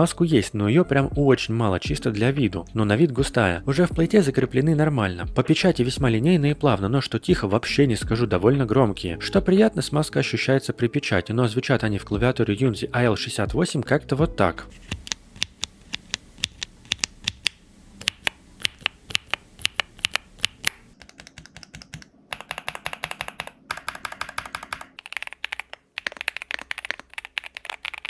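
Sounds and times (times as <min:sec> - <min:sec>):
mechanical keyboard typing: 0:14.8 - 0:28.0.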